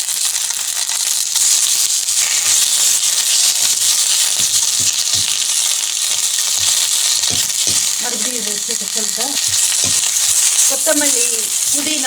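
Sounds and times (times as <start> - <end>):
leaves sizzling in hot oil: 0.0 - 12.0
soft knocks from stirring: 6.6 - 8.0, 9.4 - 10.5.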